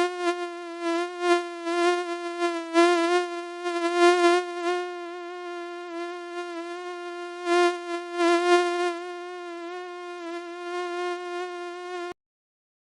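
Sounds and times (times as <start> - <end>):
mosquito whine: 0.0 - 12.2.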